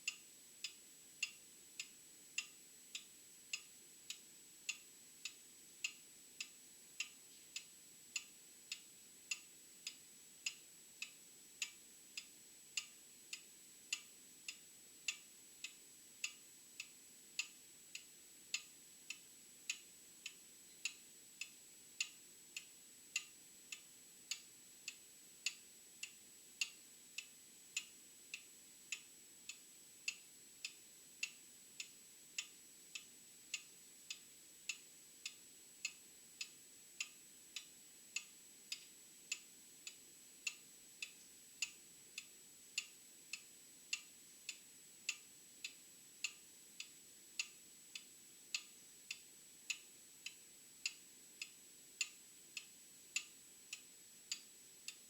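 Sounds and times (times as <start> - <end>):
clock ticking: 0.0 - 55.0.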